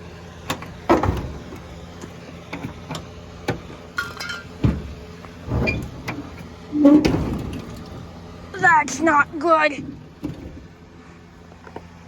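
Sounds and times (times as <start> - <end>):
steady low hum: 0.0 - 12.0
metal clunks on truck door: 0.4 - 1.7, 2.5 - 8.0, 9.8 - 10.8.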